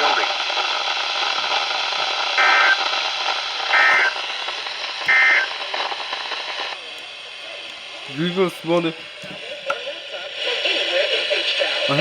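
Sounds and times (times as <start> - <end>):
radio hiss: 0.0 - 12.0
digital data bursts: 2.3 - 6.8.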